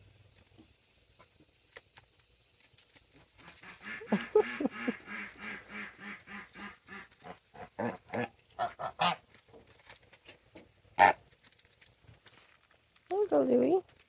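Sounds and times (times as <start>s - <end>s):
geese honking: 3.5s - 9.2s.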